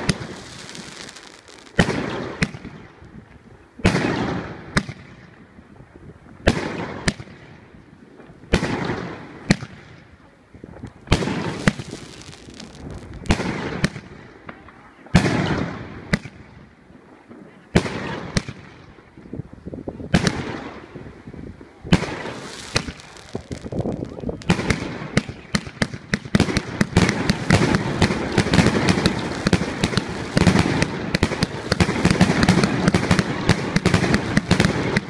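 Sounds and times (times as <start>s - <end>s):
sharp firework crack: 0.0s - 2.8s, 11.1s - 16.4s, 21.8s - 35.0s
fireworks bangs with hiss: 0.0s - 5.3s, 6.4s - 7.6s, 8.5s - 10.1s, 10.9s - 16.6s, 17.7s - 18.8s, 20.0s - 35.0s.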